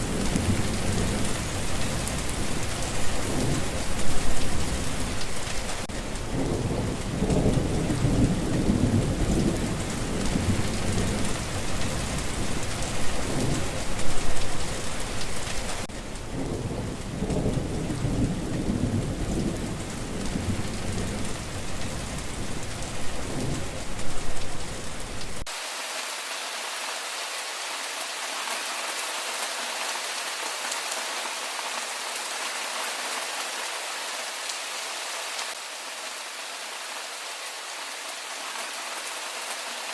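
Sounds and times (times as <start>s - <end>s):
thunder rumbling: 0.0s - 25.5s
heavy rain: 0.0s - 39.9s.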